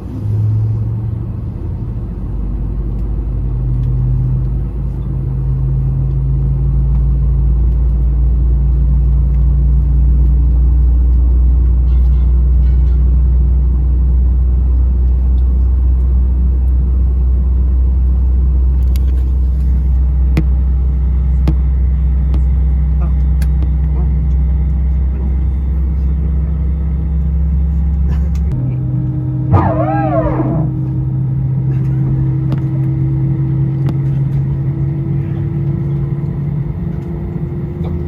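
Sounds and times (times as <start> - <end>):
aircraft cabin rumble: 0.0 - 38.0
low hum: 16.6 - 36.0.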